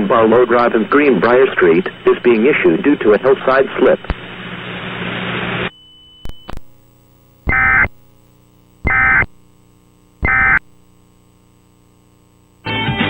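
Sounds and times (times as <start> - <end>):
click: 6.2 - 6.7
digital data tone bursts: 7.5 - 8.0, 8.8 - 9.4, 10.2 - 10.7.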